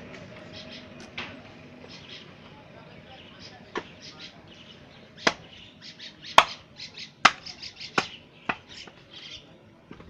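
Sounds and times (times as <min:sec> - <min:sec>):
cleaver chopping meat: 0:05.2 - 0:05.4, 0:06.4 - 0:06.6, 0:07.2 - 0:08.7.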